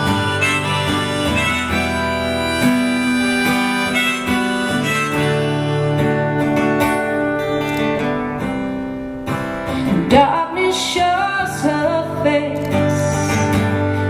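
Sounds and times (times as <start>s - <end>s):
harmonica melody: 0.0s - 10.0s
strummed acoustic guitar: 0.0s - 14.0s.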